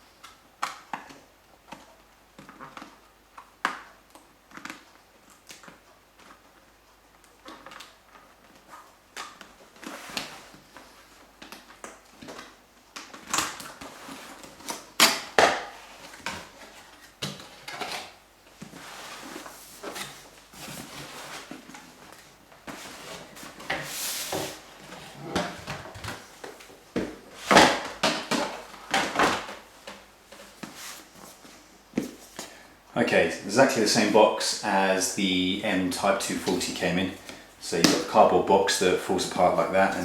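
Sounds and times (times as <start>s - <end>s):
cardboard box rustling and scraping: 22.6s - 26.3s.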